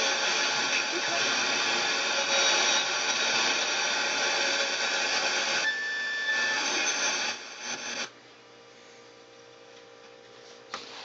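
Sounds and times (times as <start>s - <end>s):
radio static hiss: 0.0s - 8.1s.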